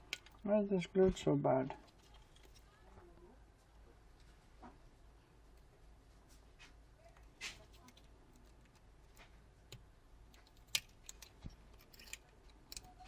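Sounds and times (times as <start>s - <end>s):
small tool clicking and scraping: 10.3s - 13.0s.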